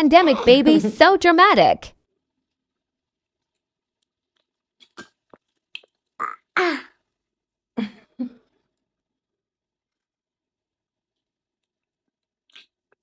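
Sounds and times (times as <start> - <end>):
baby grunting and coughing: 0.2 - 0.6, 6.2 - 7.0.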